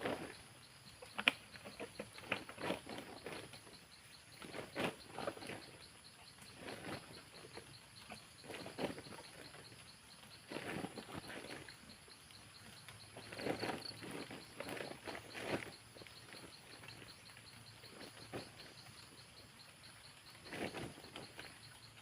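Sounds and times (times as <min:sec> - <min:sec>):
pulsing insect chirp: 0:00.0 - 0:22.0.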